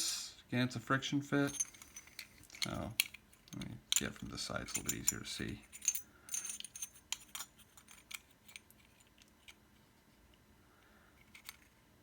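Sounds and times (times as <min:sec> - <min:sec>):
small parts clicking: 0:01.5 - 0:09.6.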